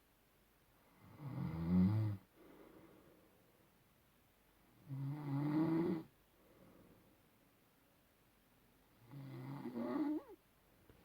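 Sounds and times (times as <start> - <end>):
snore: 1.0 - 2.2, 4.8 - 6.1, 9.0 - 10.4.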